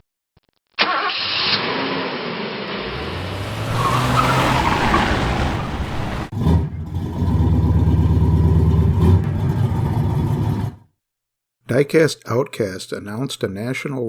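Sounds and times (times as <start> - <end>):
tyres squealing: 2.8 - 6.3
car engine running: 2.8 - 10.8.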